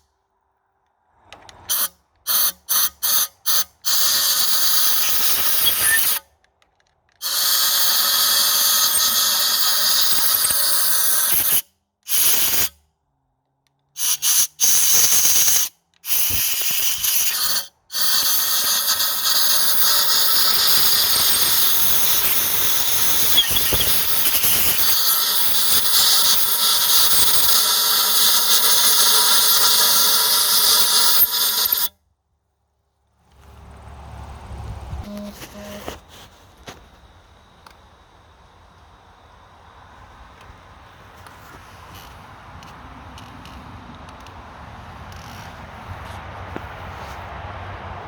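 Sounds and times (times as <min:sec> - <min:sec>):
loud steady hiss: 0:14.1 - 0:31.8.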